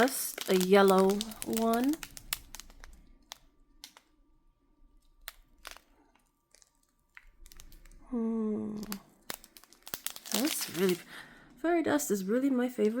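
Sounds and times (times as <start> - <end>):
plastic bags clicking and rustling: 0.0 - 4.1, 5.0 - 8.0, 8.7 - 11.1.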